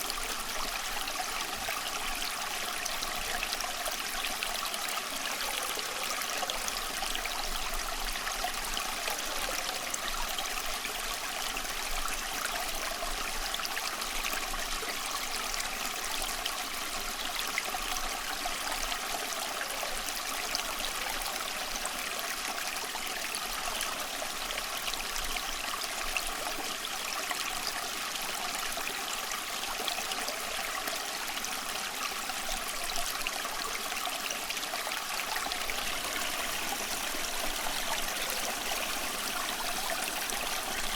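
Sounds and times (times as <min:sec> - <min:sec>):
water flowing and splashing: 0:29.1 - 0:40.9.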